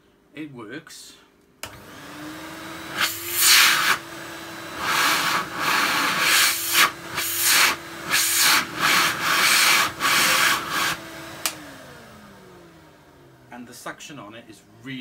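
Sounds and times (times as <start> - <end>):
vacuum cleaner motor hum: 1.6 - 13.5
rushing air surges: 3.0 - 4.1.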